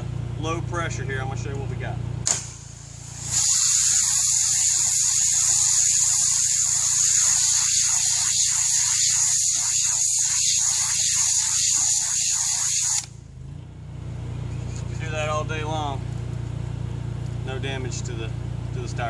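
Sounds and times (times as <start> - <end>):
water spraying with hiss: 2.5 - 13.0.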